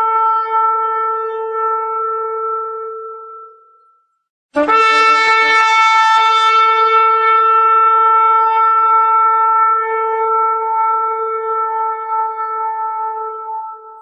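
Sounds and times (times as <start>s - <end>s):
ram's horn long blast: 4.6s - 14.0s.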